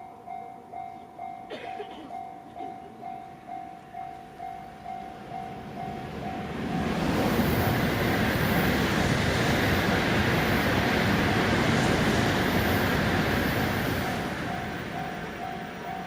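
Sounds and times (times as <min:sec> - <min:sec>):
crossing alarm bell ringing: 0:00.0 - 0:06.8, 0:14.0 - 0:16.0
train wheels rumbling on rail: 0:00.9 - 0:16.0.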